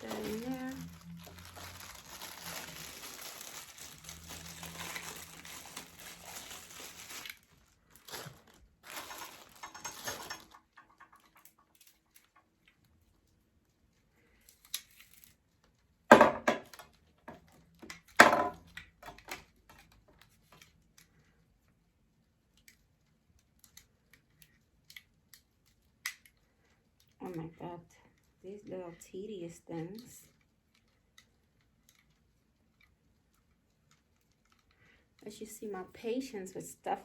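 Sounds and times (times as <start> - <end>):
plastic packaging rustling: 0.0 - 12.7
plastic parts knocking: 8.9 - 11.6, 16.1 - 19.8.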